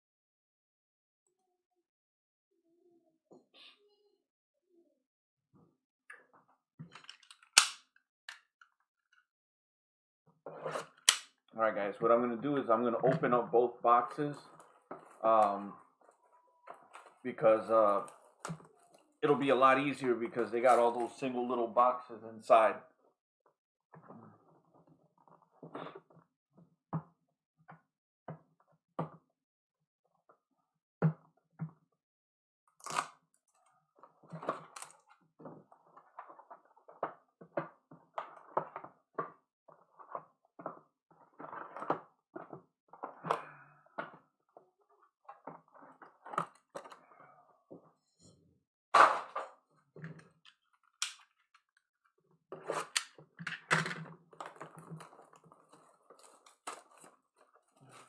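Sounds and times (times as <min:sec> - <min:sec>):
cardboard rustling and scraping: 0:54.3 - 0:58.0.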